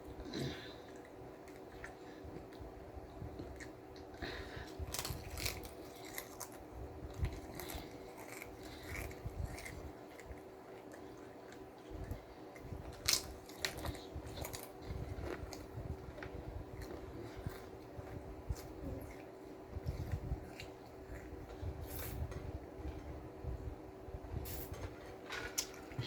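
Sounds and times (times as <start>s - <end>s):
faint steady hum: 0.0s - 26.0s
sandwich crunching while eating: 3.4s - 22.2s.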